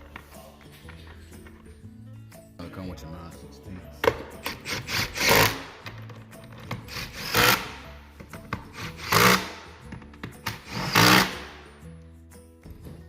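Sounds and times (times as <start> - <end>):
power tool driving bolts: 4.4 - 7.9, 8.5 - 9.8, 10.4 - 11.6.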